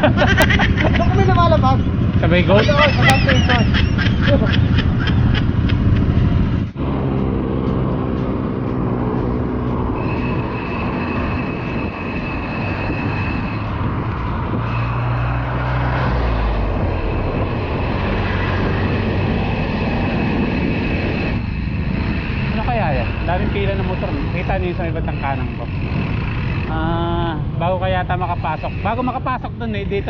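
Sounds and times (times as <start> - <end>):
road traffic noise: 0.0 - 30.0
high-pitched steady tone: 7.0 - 15.4, 16.4 - 29.5.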